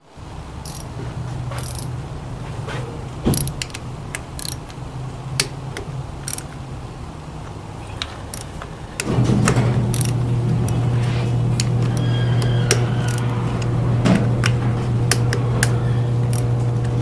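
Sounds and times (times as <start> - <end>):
metallic clicks and jingles: 1.6 - 1.9, 8.3 - 10.9
car engine idling: 4.8 - 17.0.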